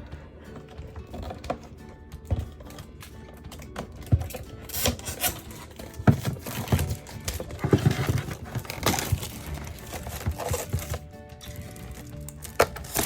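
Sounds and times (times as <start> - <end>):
packaging knocks and clicks: 0.6 - 13.0
plastic packaging crinkling: 4.3 - 13.0.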